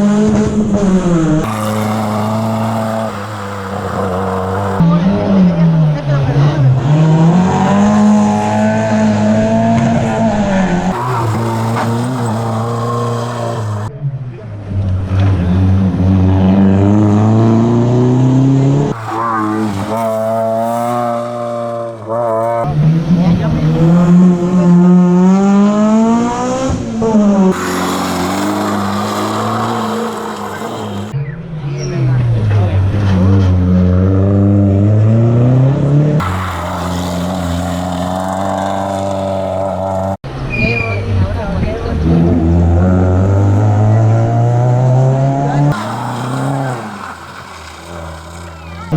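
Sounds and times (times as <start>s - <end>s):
rally car engine revving: 0.0s - 40.4s, 41.9s - 48.9s.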